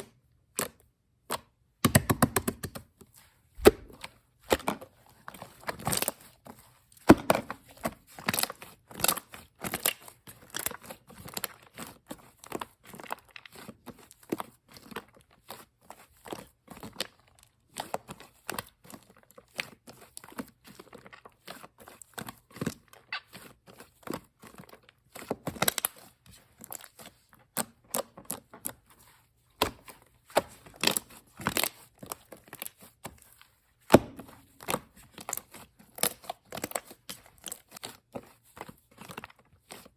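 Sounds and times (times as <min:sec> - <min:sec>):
slime being squished: 0:29.6 - 0:39.9.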